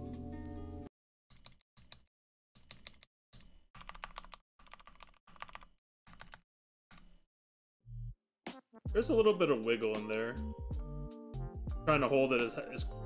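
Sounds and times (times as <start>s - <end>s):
mechanical keyboard typing: 1.3s - 3.1s, 3.8s - 6.4s.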